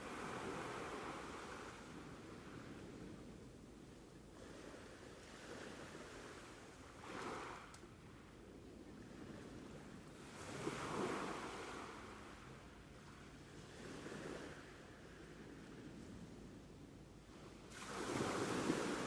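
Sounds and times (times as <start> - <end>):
ocean waves breaking on shore: 0.0 - 3.2, 4.4 - 7.7, 9.1 - 16.0, 17.3 - 19.0.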